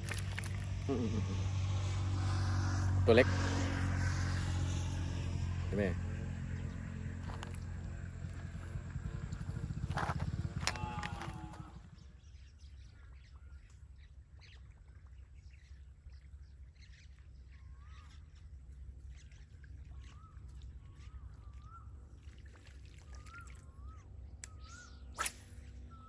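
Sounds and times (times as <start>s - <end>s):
low rumble: 0.0s - 13.1s
bird whistling calls: 23.1s - 26.0s.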